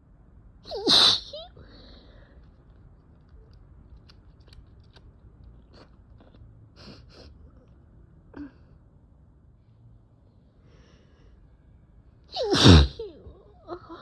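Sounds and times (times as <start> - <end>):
short airy sniffs: 0.9 - 1.3
quiet breathing: 1.6 - 2.8, 9.5 - 12.0.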